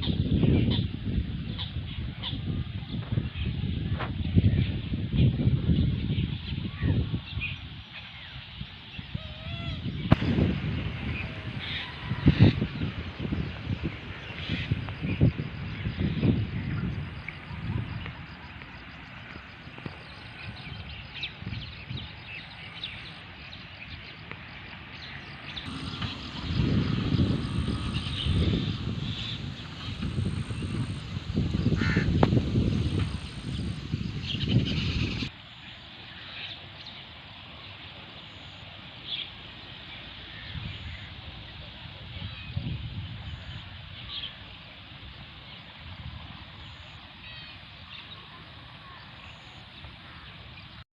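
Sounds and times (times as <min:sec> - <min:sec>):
low rumbles: 0:09.9 - 0:21.8, 0:25.3 - 0:35.3
steady hiss: 0:10.1 - 0:41.9
high bird chirps: 0:25.6 - 0:35.3.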